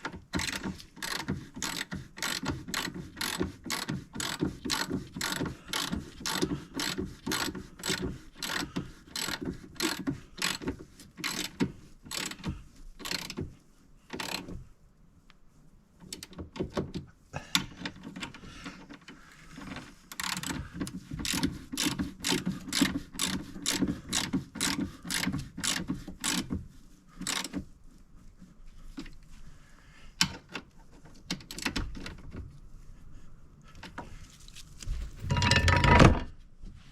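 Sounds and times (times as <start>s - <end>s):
ratchet wrench clicking: 0.4s - 10.6s, 11.2s - 12.4s, 13.0s - 13.4s, 14.2s - 14.4s, 20.2s - 20.6s, 21.2s - 26.5s, 27.2s - 27.5s.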